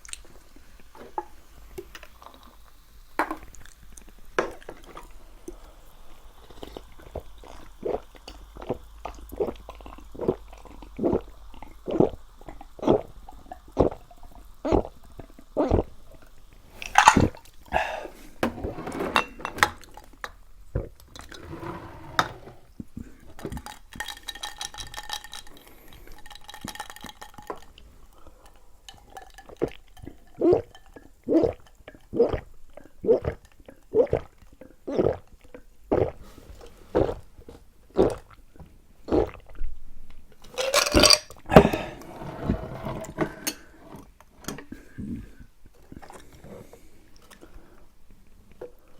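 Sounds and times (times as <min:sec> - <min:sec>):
person gulping a drink: 0:06.4 - 0:16.2, 0:16.8 - 0:18.7, 0:29.1 - 0:39.8, 0:40.5 - 0:42.1, 0:44.6 - 0:47.5
drink container clinking: 0:16.8 - 0:19.9.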